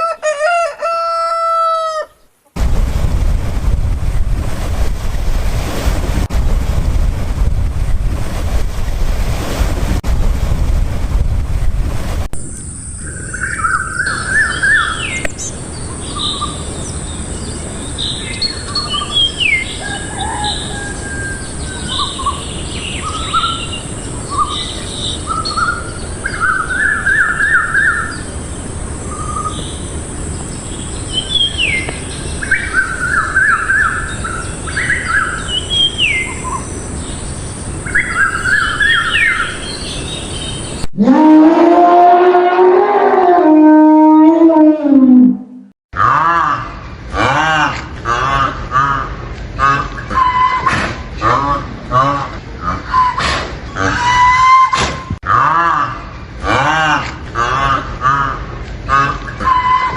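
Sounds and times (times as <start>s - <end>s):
windy surf-like rumble: 2.6s - 40.9s
birds chirping and trilling: 12.5s - 40.9s
steady high hiss: 21.4s - 40.8s.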